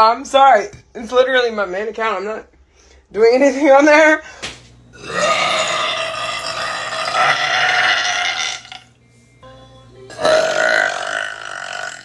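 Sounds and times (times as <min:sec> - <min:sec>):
woman burping: 0:05.0 - 0:08.9, 0:10.1 - 0:12.0.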